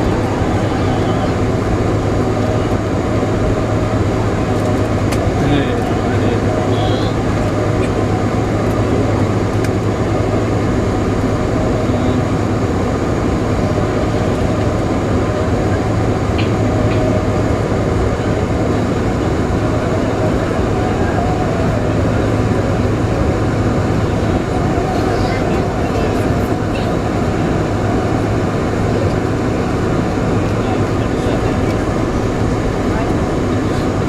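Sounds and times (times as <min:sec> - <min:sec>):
jet engines humming in cabin: 0:00.0 - 0:34.0.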